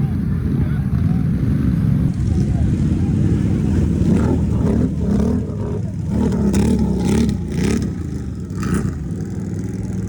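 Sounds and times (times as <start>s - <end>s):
engine revving: 3.3s - 10.0s.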